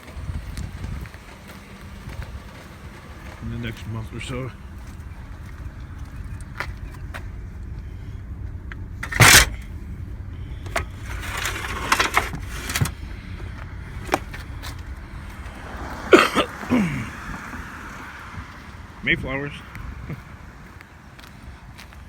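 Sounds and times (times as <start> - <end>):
metal bed frames clanking: 9.0 - 9.7, 10.6 - 14.8
metal scrape: 9.0 - 9.7, 10.6 - 14.8.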